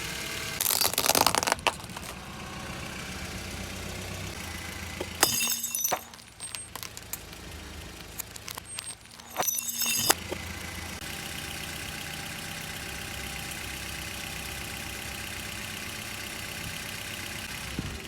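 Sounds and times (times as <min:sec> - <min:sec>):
car engine running low: 0:00.0 - 0:05.4, 0:06.1 - 0:09.2, 0:10.0 - 0:18.0
tyre crushing crunchy objects: 0:00.6 - 0:02.2.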